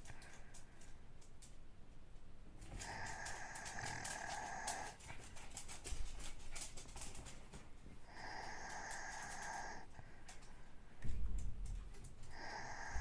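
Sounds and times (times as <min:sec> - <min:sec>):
snort: 0:02.8 - 0:05.0, 0:08.1 - 0:09.9, 0:12.3 - 0:13.0
man snoring with wheeze: 0:08.1 - 0:09.8, 0:12.3 - 0:13.0.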